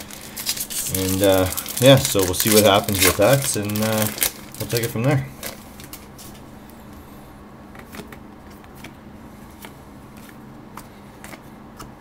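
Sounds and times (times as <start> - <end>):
trading cards clicking and rustling: 0.0 - 6.4
low electrical hum: 0.0 - 12.0.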